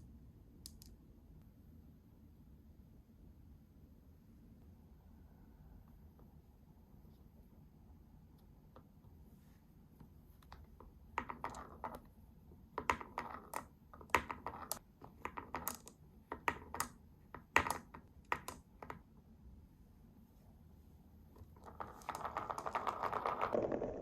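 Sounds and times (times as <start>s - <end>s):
marbles clattering on wooden track: 11.2s - 12.0s, 12.8s - 19.0s, 21.4s - 24.0s.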